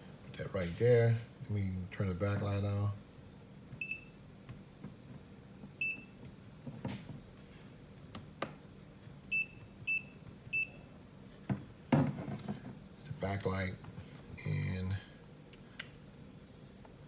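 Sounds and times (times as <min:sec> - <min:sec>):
multimeter beeps: 0:03.8 - 0:04.2, 0:05.8 - 0:06.2, 0:09.3 - 0:10.8.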